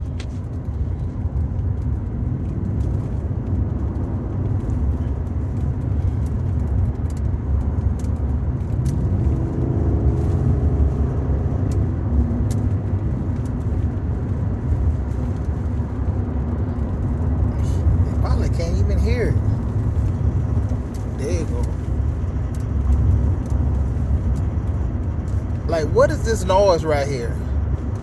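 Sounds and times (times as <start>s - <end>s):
pickup truck road rumble: 0.0s - 28.0s
higher droning hum: 17.4s - 28.0s.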